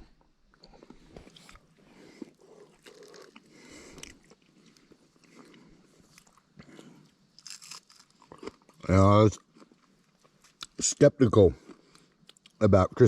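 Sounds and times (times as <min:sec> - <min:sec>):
person chewing crunchy food: 0:00.6 - 0:10.8.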